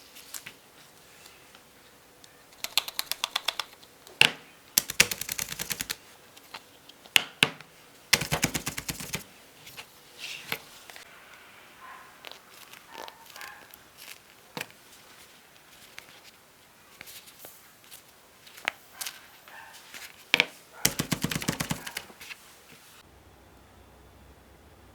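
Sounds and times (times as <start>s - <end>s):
plastic fidget toy clicks: 2.6s - 3.8s, 4.8s - 6.0s, 8.2s - 9.2s, 20.9s - 22.1s.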